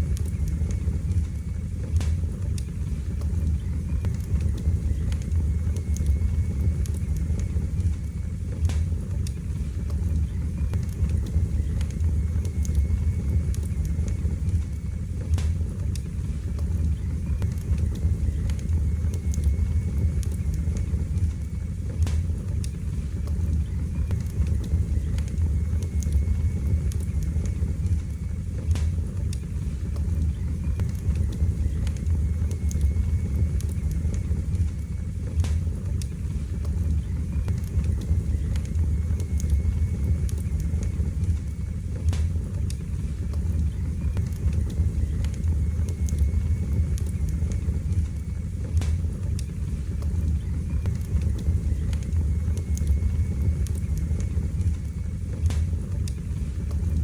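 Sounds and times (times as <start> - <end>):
burning logs crackling and popping: 0.0 - 57.0
flames rushing: 0.0 - 57.0.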